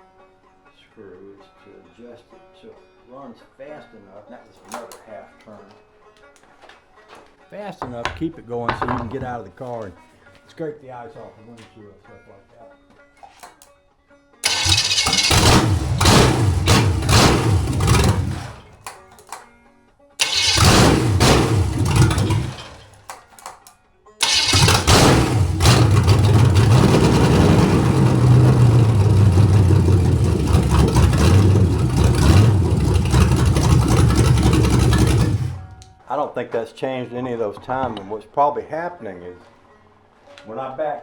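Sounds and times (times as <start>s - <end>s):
car engine starting and stalling: 14.4s - 18.9s, 20.2s - 23.0s, 24.2s - 35.9s.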